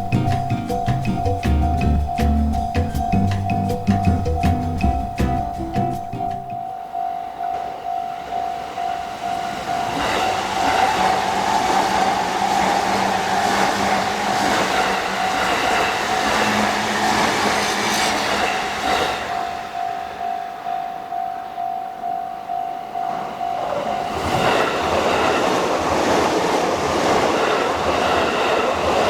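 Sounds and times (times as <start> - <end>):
level crossing bell ringing: 0.0 - 11.3, 19.3 - 24.8
train rumble and wheel noise: 0.0 - 29.0.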